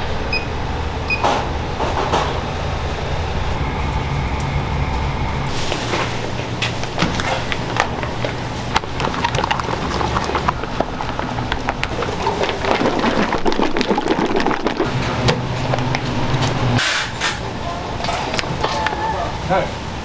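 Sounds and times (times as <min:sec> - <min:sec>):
low hum: 0:02.6 - 0:16.8.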